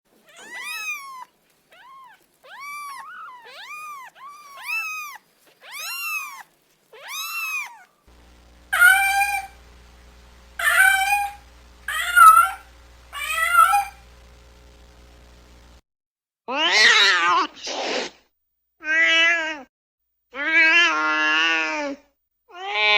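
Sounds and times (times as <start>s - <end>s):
cat meowing: 0.2s - 8.1s, 8.7s - 9.6s, 10.6s - 14.0s
steady low hum: 1.2s - 15.8s.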